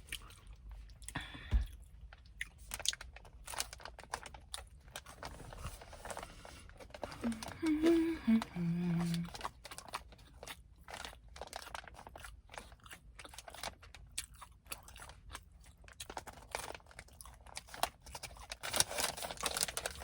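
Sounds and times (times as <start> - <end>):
chewing crunchy food: 0.0 - 20.0.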